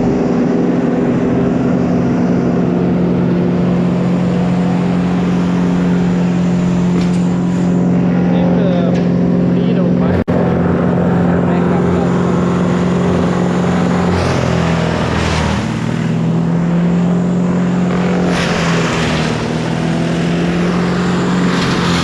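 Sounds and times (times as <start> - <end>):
engine running steadily: 0.0 - 22.0.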